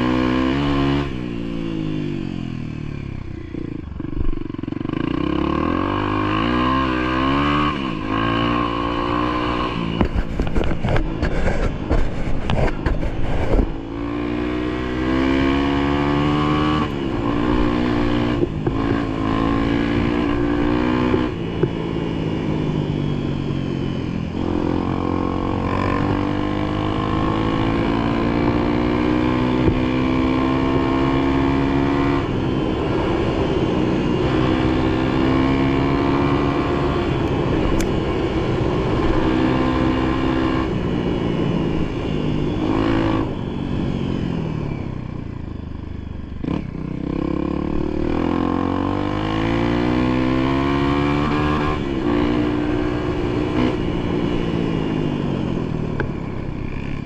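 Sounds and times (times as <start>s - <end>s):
vehicle engine revving under load: 24.4s - 44.7s.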